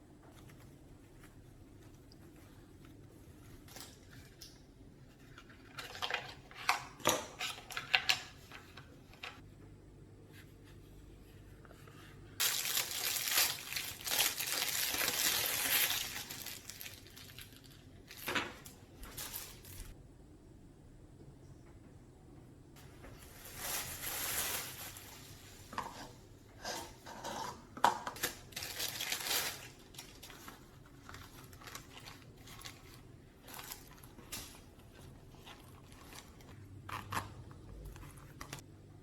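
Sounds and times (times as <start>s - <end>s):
loud rustling or tearing: 12.4s - 18.4s, 23.2s - 25.7s, 28.2s - 37.4s
packaging clicks and crinkles: 12.4s - 19.9s, 28.1s - 38.6s.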